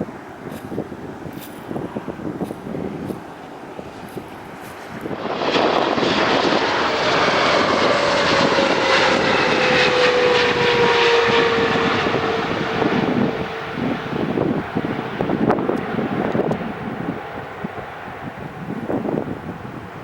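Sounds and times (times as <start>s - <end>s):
jet engine whine falling in pitch: 0.0s - 20.0s
jet engines roaring: 0.0s - 20.0s.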